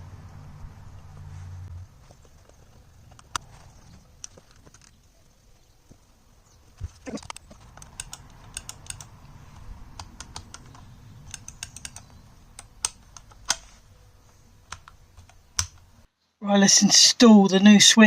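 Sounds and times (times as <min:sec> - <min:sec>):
plastic parts clicking and tapping: 0:06.8 - 0:15.9.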